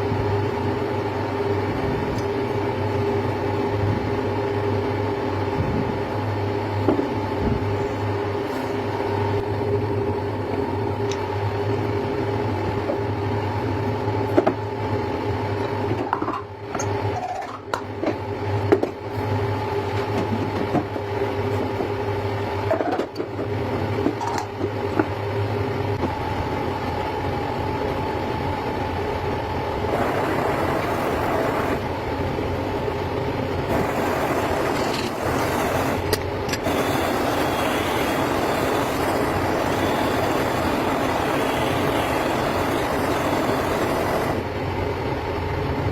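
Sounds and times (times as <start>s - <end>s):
machine humming: 24.8s - 45.9s
machine whirring: 25.8s - 45.5s.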